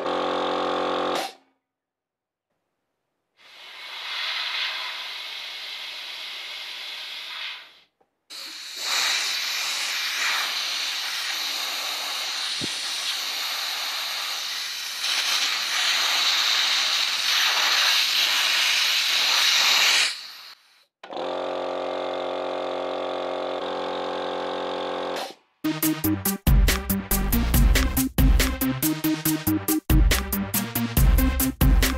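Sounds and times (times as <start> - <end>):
compressed air hissing: 3.4 - 20.7.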